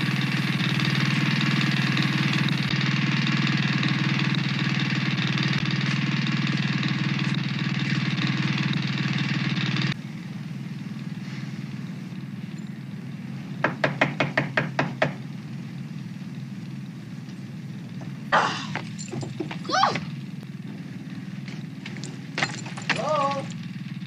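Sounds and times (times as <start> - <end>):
generator engine hum: 0.0 - 24.0
sharp knocks: 13.6 - 15.2.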